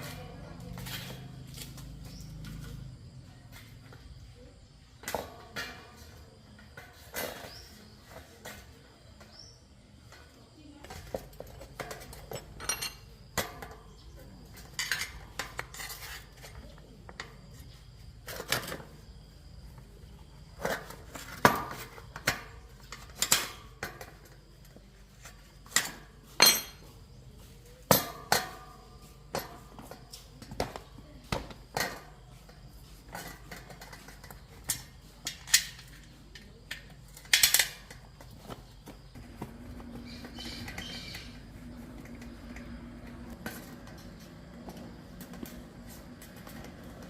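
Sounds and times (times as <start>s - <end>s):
metal tools clinking: 11.6s - 16.6s, 25.2s - 27.0s.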